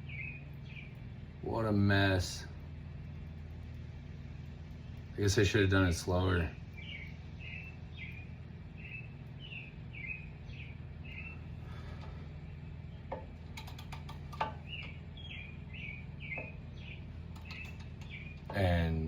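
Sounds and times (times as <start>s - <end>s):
small bird chirping: 0.0s - 1.3s, 2.9s - 19.0s
steady low hum: 0.0s - 19.0s
sharp clicks and knocks: 13.0s - 15.0s, 17.3s - 18.6s.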